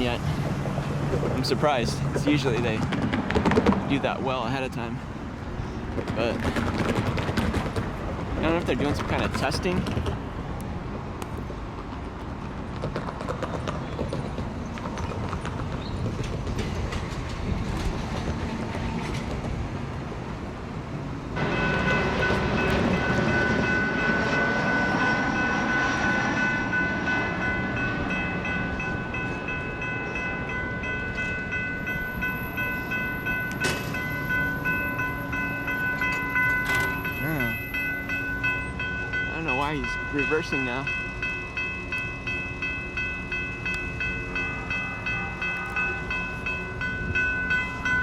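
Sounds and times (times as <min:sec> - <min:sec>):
crossing warning bells ringing: 0:00.0 - 0:02.9, 0:21.4 - 0:48.0
light rail train creeping: 0:00.0 - 0:48.0.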